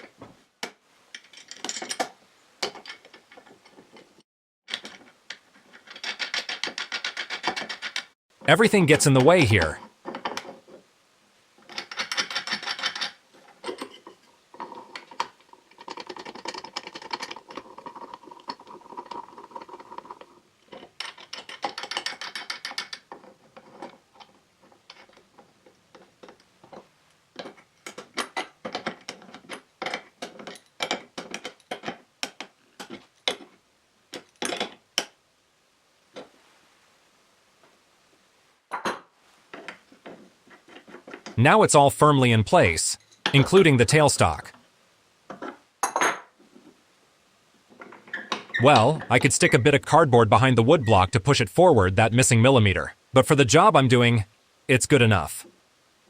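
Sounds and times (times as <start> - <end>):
metal parts clicking and knocking: 0.0 - 4.1, 4.7 - 8.1, 11.6 - 35.2.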